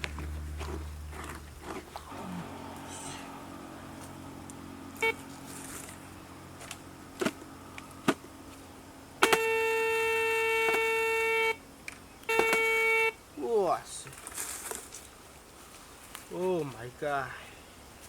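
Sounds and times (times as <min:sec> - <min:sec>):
metal detector buzzing tone: 0:02.1 - 0:08.1, 0:09.2 - 0:11.6, 0:12.2 - 0:13.2.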